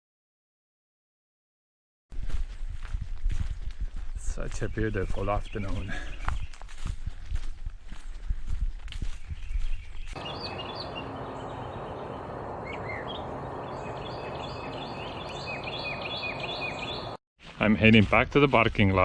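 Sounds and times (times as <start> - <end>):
footsteps on a trail: 2.2 - 18.8
birds chirping: 4.6 - 6.6, 9.4 - 17.2
bird singing down-slurred notes: 10.2 - 17.2.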